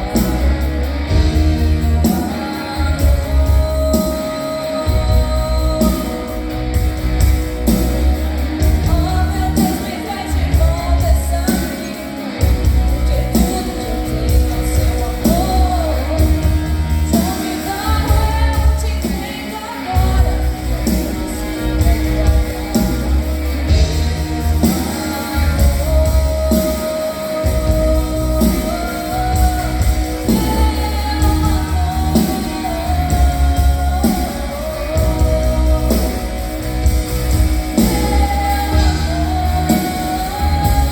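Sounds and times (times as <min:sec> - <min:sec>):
live band playing: 0:00.0 - 0:40.9
girl singing: 0:13.0 - 0:36.6, 0:37.7 - 0:40.9.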